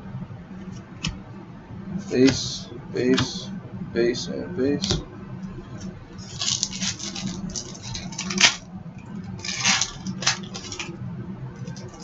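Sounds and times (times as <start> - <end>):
trading cards rustling: 6.2 - 8.6, 9.4 - 10.9, 11.6 - 12.0.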